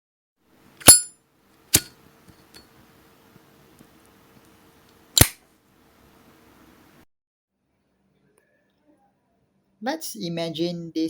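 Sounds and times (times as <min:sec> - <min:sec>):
petrol lighter clicks: 0:01.7 - 0:01.9, 0:05.2 - 0:05.4.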